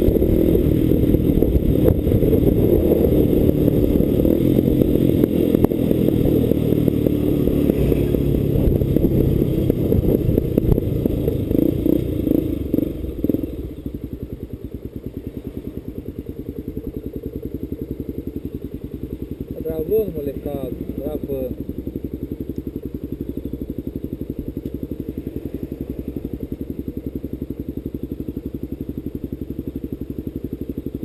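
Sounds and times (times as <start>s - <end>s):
motorcycle engine running: 0.0s - 31.0s.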